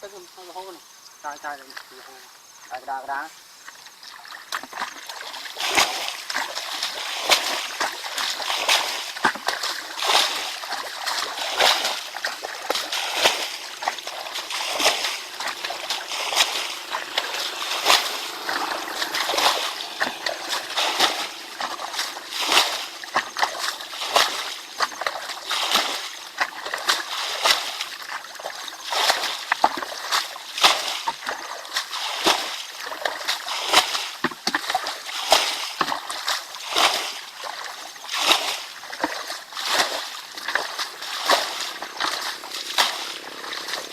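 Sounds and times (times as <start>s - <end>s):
water splashing and sloshing: 1.7s - 43.9s.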